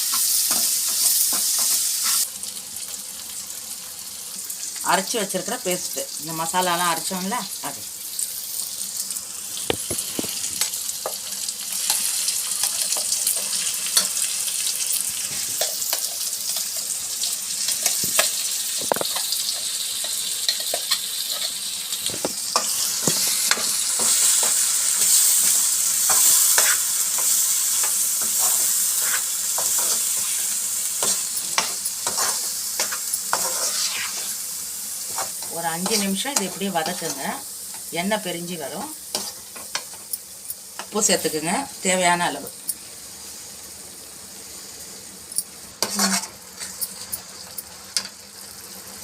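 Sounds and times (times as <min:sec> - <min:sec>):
paste sizzling in oil: 0:00.0 - 0:49.0
spoon scraping a pan: 0:17.6 - 0:34.4, 0:35.1 - 0:37.2, 0:39.1 - 0:40.9, 0:45.8 - 0:47.3.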